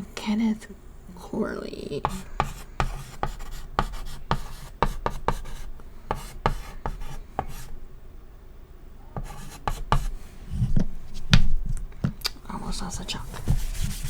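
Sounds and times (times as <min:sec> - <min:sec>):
chalk tapping and scraping: 0:02.0 - 0:07.8, 0:09.2 - 0:12.2, 0:13.1 - 0:14.0.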